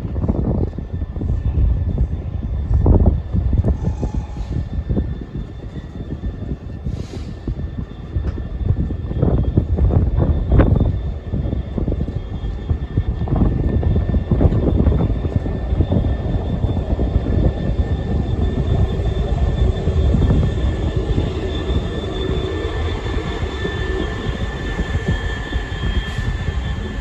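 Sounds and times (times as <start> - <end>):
high whine: 0.0 - 27.0
train rumbling past: 0.0 - 27.0.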